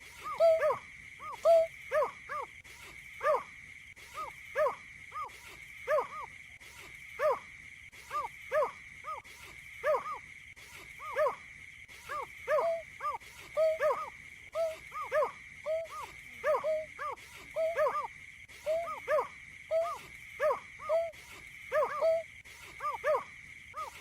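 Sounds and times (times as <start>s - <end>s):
birds hooting: 0.0s - 2.5s, 12.1s - 24.0s.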